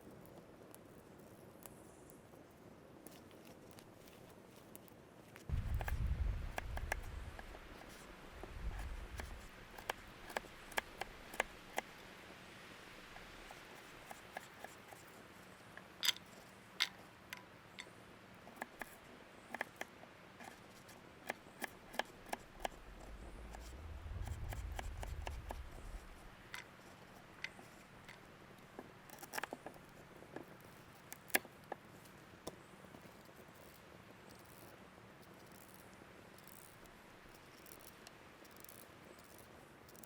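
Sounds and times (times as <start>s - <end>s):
sticks crackling and snapping: 5.4s - 11.9s
dull low rumble: 5.5s - 9.6s, 22.4s - 26.6s.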